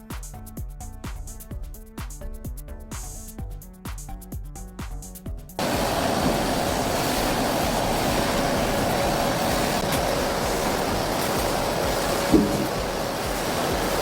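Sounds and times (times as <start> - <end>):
machine rushing noise: 5.6 - 14.0.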